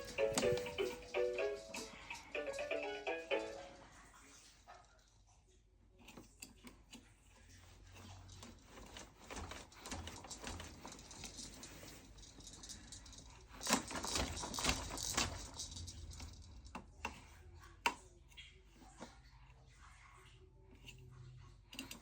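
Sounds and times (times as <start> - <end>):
plastic toys clicking and rattling: 0.0 - 3.8, 8.0 - 18.0, 21.7 - 22.0.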